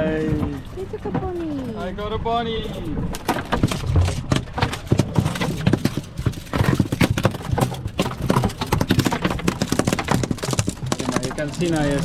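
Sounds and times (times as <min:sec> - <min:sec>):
fish flapping on deck: 0:03.1 - 0:12.0.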